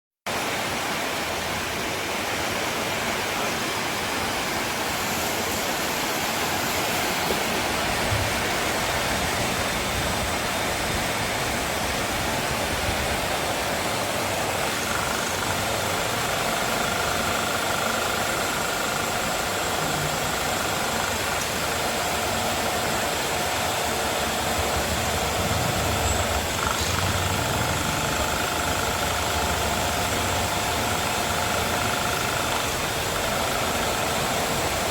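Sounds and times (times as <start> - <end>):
milling machine hiss: 4.7 - 34.9
two-pitch machine whine: 12.2 - 34.9.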